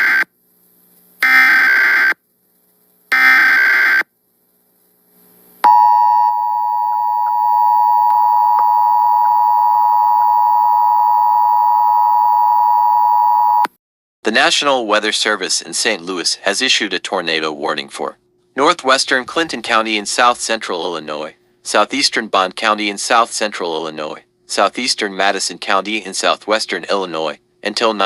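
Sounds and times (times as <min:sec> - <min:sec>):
two-tone attention signal: 0:05.7 - 0:13.6.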